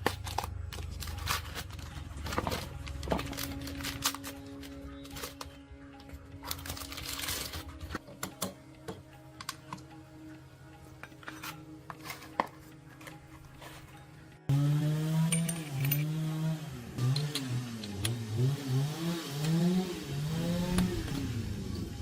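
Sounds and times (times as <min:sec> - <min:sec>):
metal parts and tools clinking: 0:15.2 - 0:16.2.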